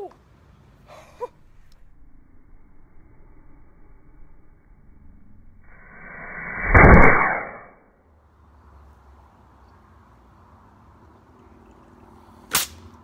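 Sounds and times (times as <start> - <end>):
water bottle rocket launching: 5.9 - 7.7, 12.5 - 12.9.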